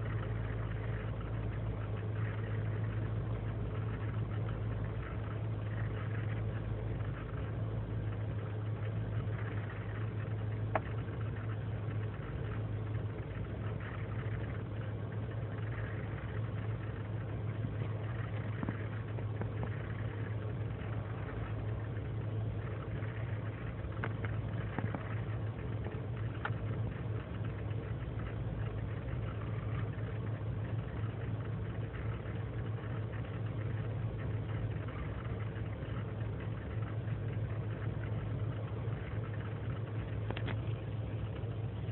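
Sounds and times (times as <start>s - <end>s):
truck engine idling: 0.0s - 41.9s
faint clicks: 22.6s - 33.8s, 34.5s - 41.5s.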